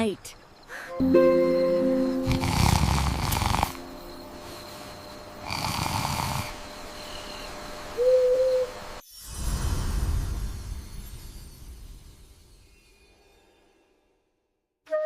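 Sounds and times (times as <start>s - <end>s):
person snoring: 2.2s - 3.8s, 5.4s - 6.6s.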